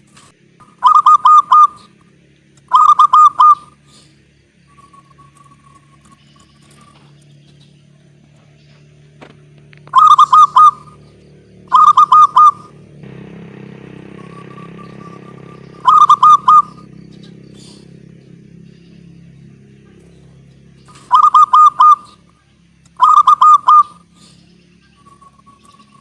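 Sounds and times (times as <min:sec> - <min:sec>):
dove cooing: 0:00.8 - 0:02.0, 0:02.7 - 0:03.8, 0:09.8 - 0:13.3, 0:13.9 - 0:22.3, 0:23.0 - 0:24.3
low hum: 0:03.6 - 0:26.0
steady rushing noise: 0:12.8 - 0:20.8.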